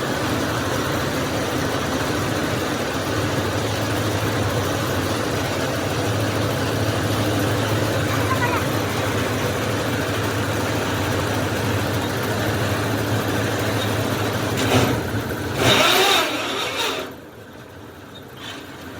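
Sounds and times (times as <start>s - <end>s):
drilling rig engine humming: 0.0s - 18.9s.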